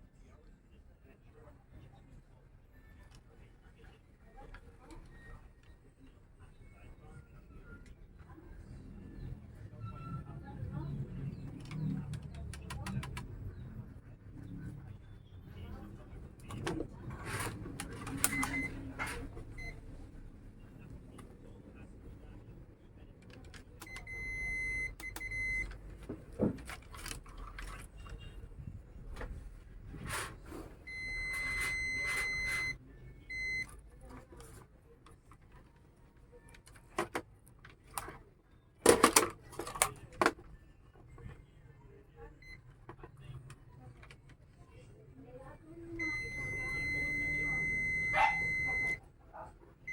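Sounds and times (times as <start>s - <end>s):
multimeter continuity buzzer beeping: 46.0s - 49.0s.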